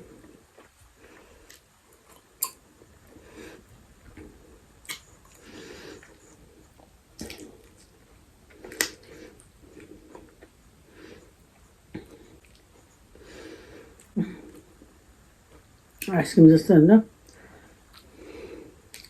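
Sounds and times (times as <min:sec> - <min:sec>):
wet chewing sounds: 0:00.1 - 0:13.2, 0:17.2 - 0:18.2
lip smacks: 0:04.1 - 0:05.4, 0:06.8 - 0:10.6, 0:17.2 - 0:18.2.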